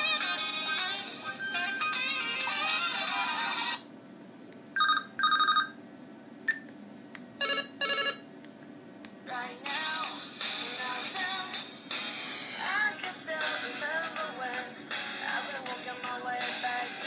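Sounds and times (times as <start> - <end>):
phone ringtone melody: 4.8 - 5.7, 7.4 - 8.2
telephone ring tone: 4.8 - 5.8, 7.4 - 8.2.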